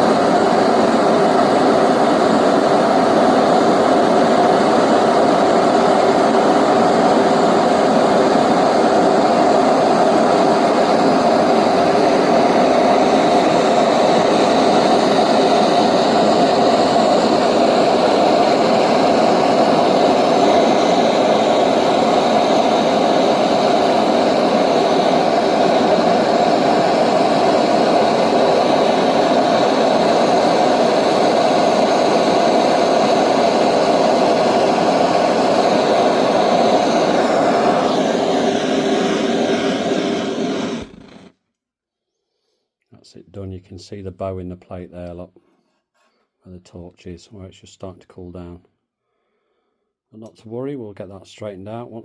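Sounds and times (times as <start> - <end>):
gas torch flame hissing: 0.0 - 41.4.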